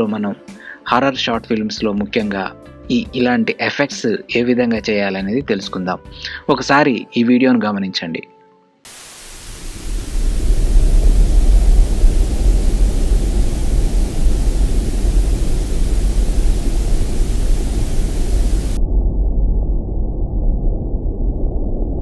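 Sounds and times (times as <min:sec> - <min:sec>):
loud steady hiss: 0:08.9 - 0:18.8
deep rumble: 0:09.3 - 0:22.0.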